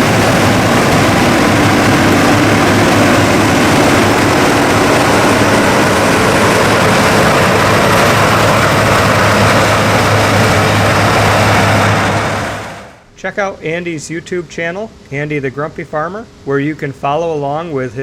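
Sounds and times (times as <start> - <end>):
combine harvester running: 0.0 - 13.1.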